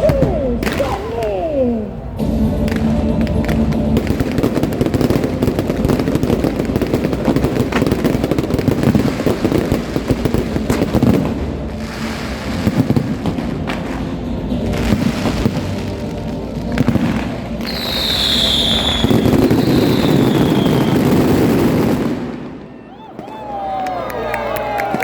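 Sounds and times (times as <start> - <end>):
fireworks cracking and popping: 0.0 - 22.5.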